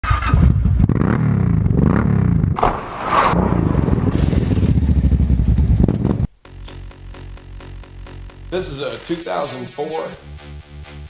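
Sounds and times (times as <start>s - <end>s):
atv engine revving: 0.0s - 2.6s, 3.8s - 6.3s
short rushing noises: 2.6s - 6.2s.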